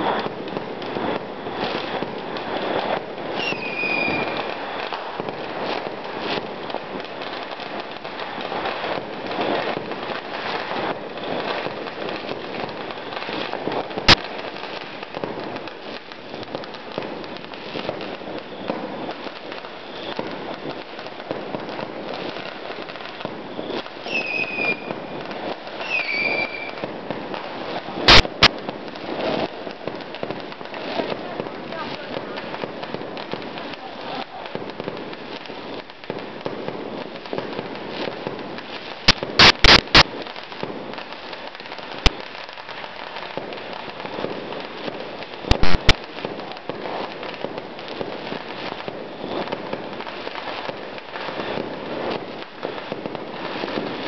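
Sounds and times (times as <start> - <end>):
falling firework whistles: 0.0 - 7.7, 15.4 - 28.5, 48.0 - 54.0
fireworks crackling and popping: 0.0 - 54.0
close firework bang: 28.0 - 29.5, 39.1 - 40.1, 45.5 - 46.0.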